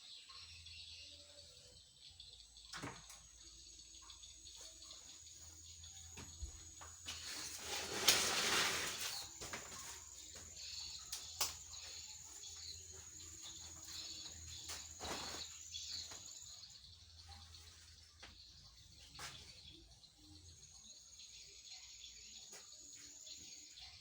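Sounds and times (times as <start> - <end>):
high-pitched insect drone: 0.0 - 24.0
wet laundry rustling: 12.3 - 16.3.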